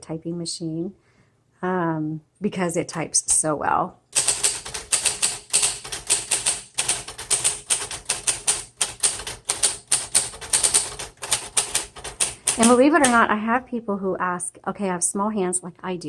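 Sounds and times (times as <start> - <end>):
manual typewriter typing: 4.1 - 13.3.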